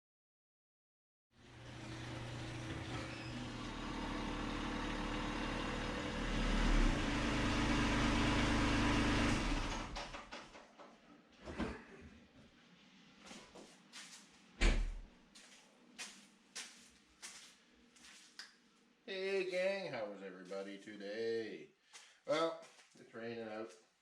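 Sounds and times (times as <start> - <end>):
engine running: 1.4 - 10.2.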